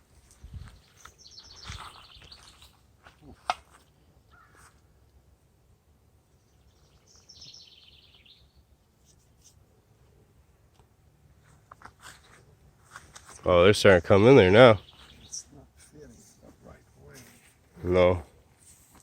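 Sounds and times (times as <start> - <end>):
songbird trilling: 0.9 - 2.7, 4.3 - 4.6, 6.5 - 8.6, 14.7 - 15.6.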